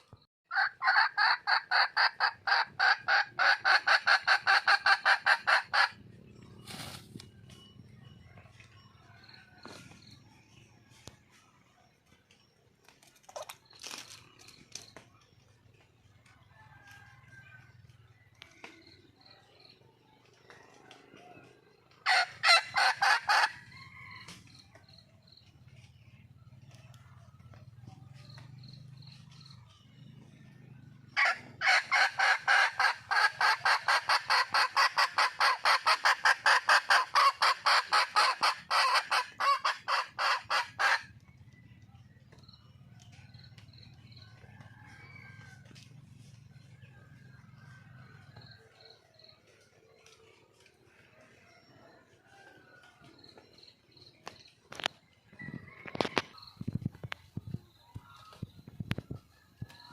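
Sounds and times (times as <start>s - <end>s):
hen cackling: 0.5s - 6.0s, 22.0s - 23.7s, 31.2s - 41.2s.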